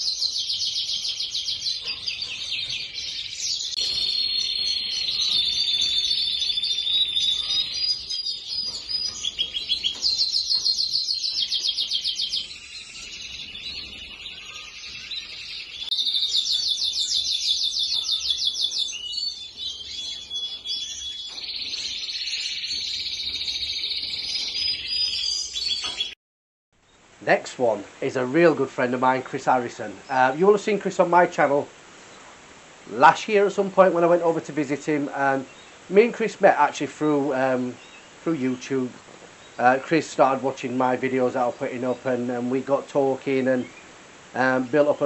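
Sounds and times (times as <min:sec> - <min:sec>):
cage birds singing: 0:00.0 - 0:26.2, 0:26.8 - 0:45.0.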